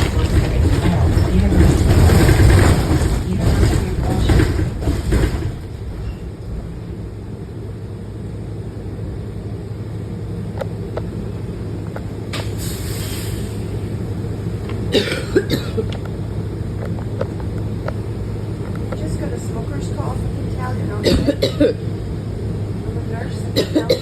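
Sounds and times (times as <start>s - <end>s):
bus engine rumble: 0.0s - 24.0s
short hiss: 12.4s - 13.6s
person coughing: 14.9s - 15.9s, 21.0s - 21.8s, 23.6s - 24.0s.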